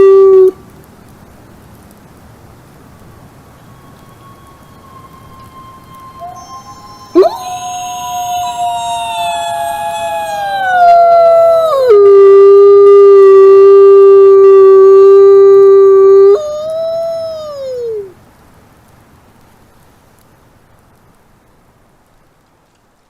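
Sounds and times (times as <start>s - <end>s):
wolf howling: 3.6s - 18.1s.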